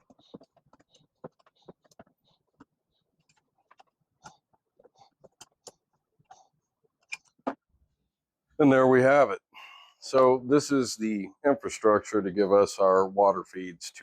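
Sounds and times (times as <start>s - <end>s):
clicks and taps on plastic fittings: 0.0s - 6.4s.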